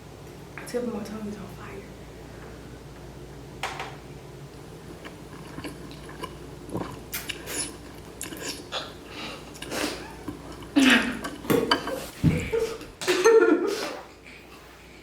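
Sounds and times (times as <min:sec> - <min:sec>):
person chewing noodles: 0:04.5 - 0:12.0.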